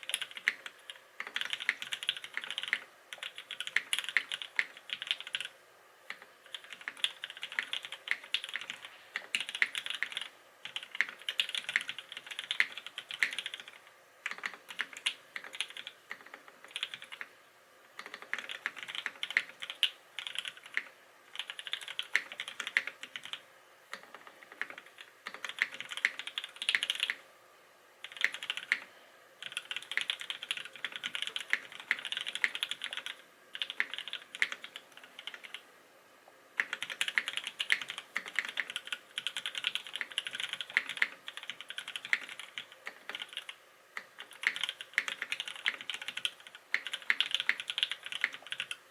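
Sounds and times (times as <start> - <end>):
mechanical keyboard typing: 0.0 - 5.5, 6.1 - 17.3, 18.0 - 27.2, 28.0 - 35.6, 36.6 - 48.8.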